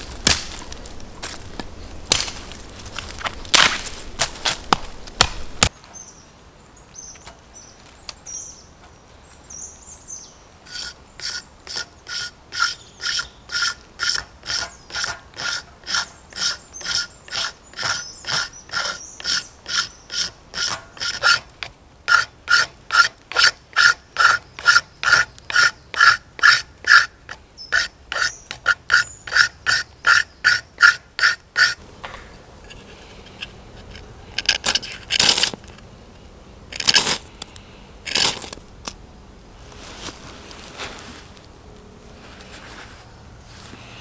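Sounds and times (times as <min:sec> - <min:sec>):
knife scraping stick: 0:10.7 - 0:31.8, 0:38.1 - 0:38.6.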